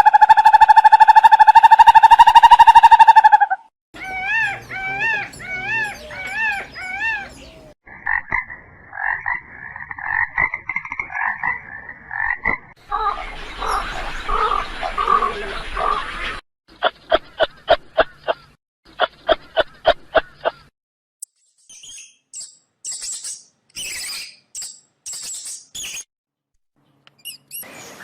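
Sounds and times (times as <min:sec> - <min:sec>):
rising and falling animal calls: 0:00.0 - 0:10.2, 0:12.9 - 0:16.4.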